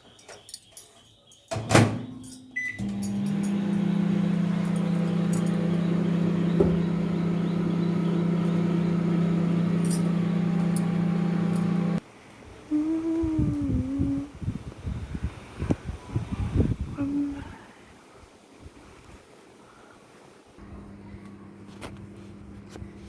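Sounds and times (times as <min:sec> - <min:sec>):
microwave door shutting: 0:01.6 - 0:12.0
microwave oven humming: 0:02.6 - 0:12.0, 0:20.6 - 0:23.0.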